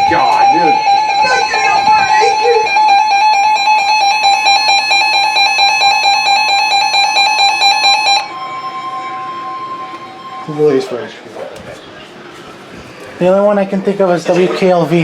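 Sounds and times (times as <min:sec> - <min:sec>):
two-pitch alarm tone: 0:00.0 - 0:11.3.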